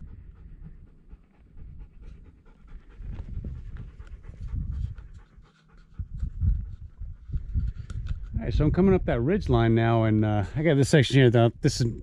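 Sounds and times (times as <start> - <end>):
dog panting: 0.0 - 7.9.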